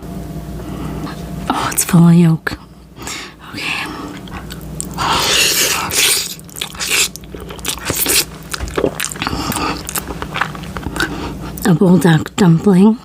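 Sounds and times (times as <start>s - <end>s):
wet chewing mouth sounds: 3.6s - 11.7s.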